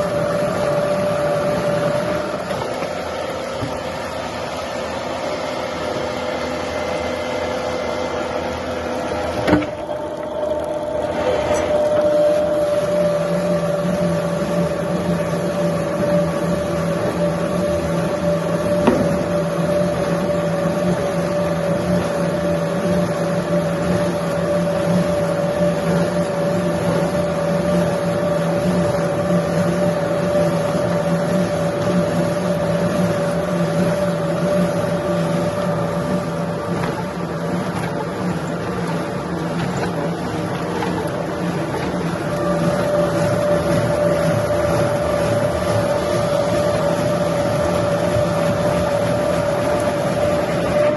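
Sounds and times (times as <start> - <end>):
machine motor humming: 0.0 - 50.9
short knock: 18.8 - 19.2.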